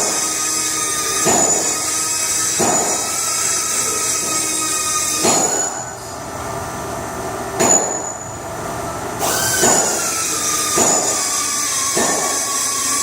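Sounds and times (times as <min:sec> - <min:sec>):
machine motor whine: 0:00.0 - 0:06.3, 0:07.8 - 0:13.0
sharp mechanical knock: 0:02.6 - 0:03.1, 0:05.2 - 0:05.8, 0:07.6 - 0:08.1, 0:09.2 - 0:10.1, 0:10.7 - 0:11.3, 0:11.9 - 0:12.4.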